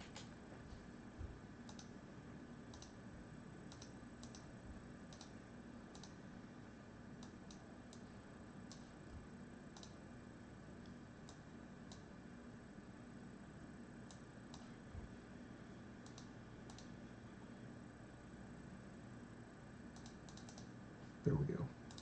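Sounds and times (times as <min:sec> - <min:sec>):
low electrical hum: 0:00.0 - 0:22.0
computer mouse clicks: 0:01.6 - 0:01.9, 0:02.7 - 0:03.0, 0:03.7 - 0:04.5, 0:05.1 - 0:06.2, 0:07.2 - 0:09.0, 0:09.7 - 0:10.0, 0:10.8 - 0:12.1, 0:14.0 - 0:14.8, 0:16.0 - 0:17.0, 0:19.9 - 0:20.7.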